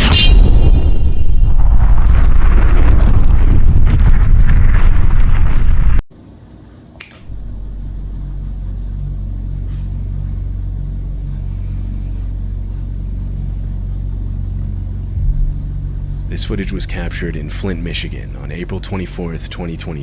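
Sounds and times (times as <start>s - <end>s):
steady low hum: 6.2s - 20.0s
click: 7.0s - 7.3s
loud burst of sound: 11.3s - 19.6s.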